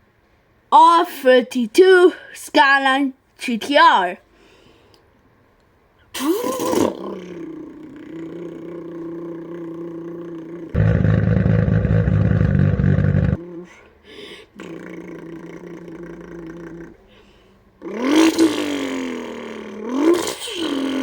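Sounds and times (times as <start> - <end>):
boy imitating car engine: 6.2 - 13.8, 14.5 - 17.1, 17.8 - 21.0.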